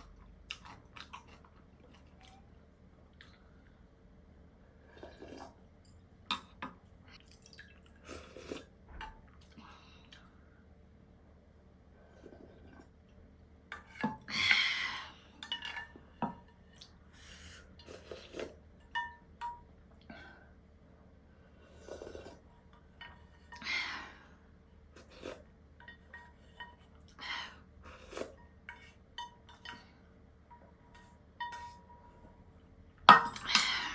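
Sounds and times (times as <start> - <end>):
noisy eating sounds: 0.0 - 3.9, 4.7 - 10.4, 13.8 - 18.8, 21.4 - 32.6
utensils clinking against bowl: 28.4 - 32.1, 33.1 - 33.9.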